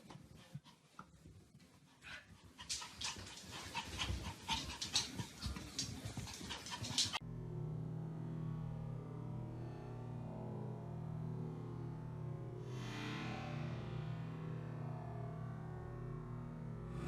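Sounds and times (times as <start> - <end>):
dog panting: 0.0 - 7.2.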